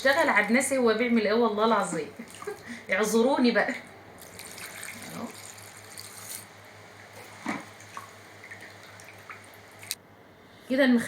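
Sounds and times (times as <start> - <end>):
water pouring: 4.2 - 10.0.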